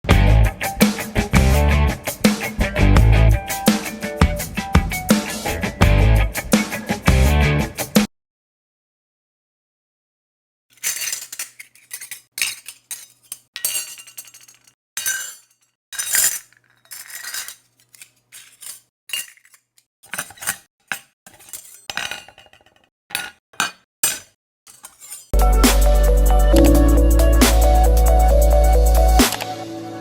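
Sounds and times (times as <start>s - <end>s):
spoon clinking and scraping on plate: 10.8s - 25.4s.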